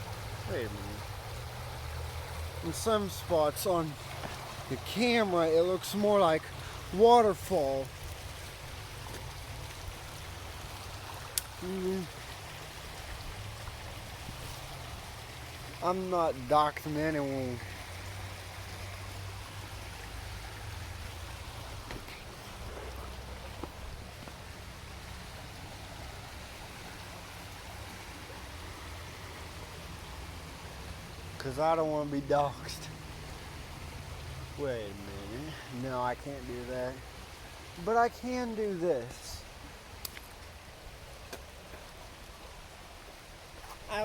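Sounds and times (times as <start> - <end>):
water rushing over rocks: 0.0 - 44.0
person humming: 11.6 - 12.1
small click: 40.0 - 40.3.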